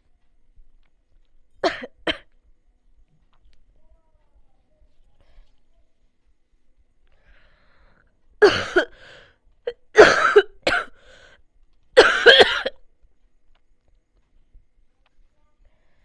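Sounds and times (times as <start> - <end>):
person coughing: 8.4 - 9.0, 9.7 - 11.0, 12.0 - 12.8.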